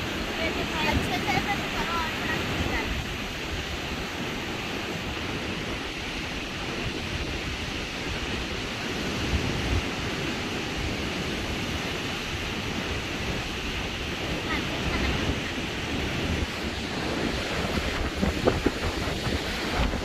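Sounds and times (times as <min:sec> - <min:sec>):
sea waves washing onto beach: 0:00.0 - 0:20.0
wind buffeting microphone: 0:00.0 - 0:20.0.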